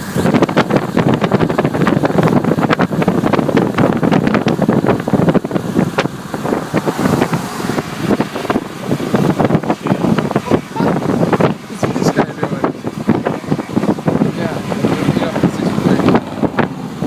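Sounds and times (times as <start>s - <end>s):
storm wind buffeting microphone: 0.0s - 17.0s.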